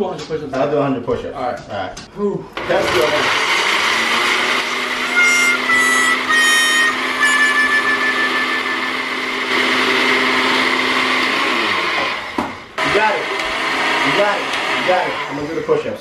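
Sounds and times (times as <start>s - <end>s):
blender motor running: 2.6s - 16.0s
short high-pitched tones: 4.9s - 9.7s.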